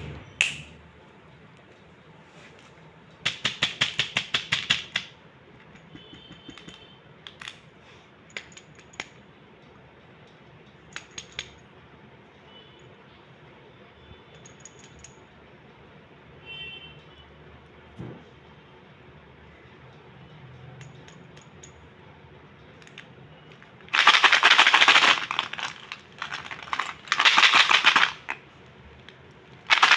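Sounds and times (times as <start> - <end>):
plastic toy clicking: 22.8 - 28.4.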